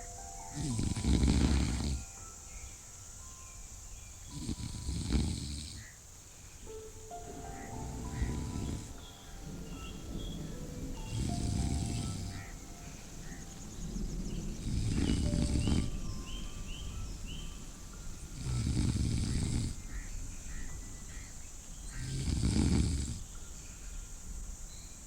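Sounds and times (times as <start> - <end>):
faint high chirps: 0.0 - 25.0
person snoring: 0.5 - 2.2, 4.3 - 5.8, 7.7 - 9.0, 11.0 - 12.4, 14.6 - 16.0, 18.4 - 19.8, 22.0 - 23.3.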